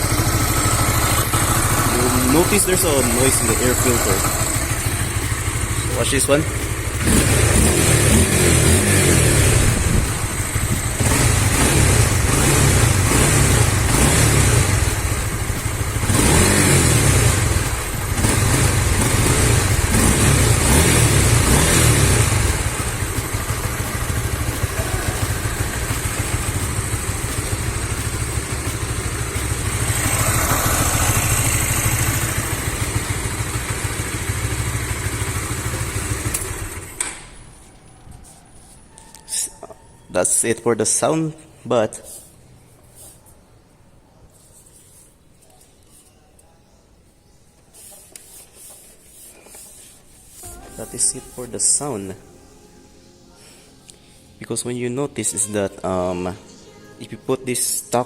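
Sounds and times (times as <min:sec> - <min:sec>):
motorcycle engine revving and idling: 0:00.0 - 0:38.9.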